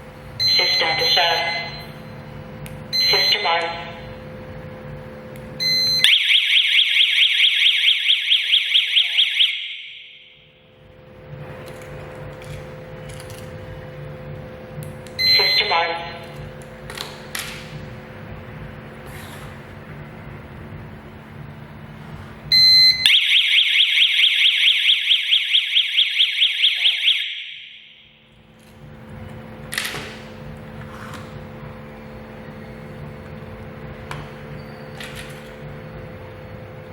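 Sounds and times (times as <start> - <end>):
high alarm beep: 0.4 - 2.3, 2.9 - 4.0, 5.6 - 10.6, 15.2 - 16.3, 22.5 - 28.2
warbling alarm siren: 0.4 - 2.3, 2.9 - 4.2, 5.6 - 10.7, 15.2 - 16.3, 22.5 - 28.3.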